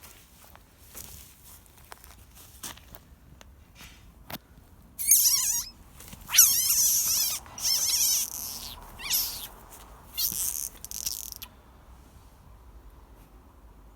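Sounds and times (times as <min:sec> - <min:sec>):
frog squeaky warbling calls: 0:05.0 - 0:09.6, 0:10.2 - 0:11.5.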